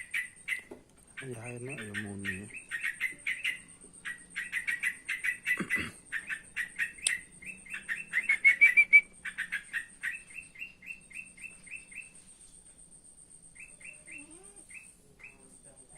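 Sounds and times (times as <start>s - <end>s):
bird chattering calls: 0.0s - 12.2s, 13.6s - 15.7s.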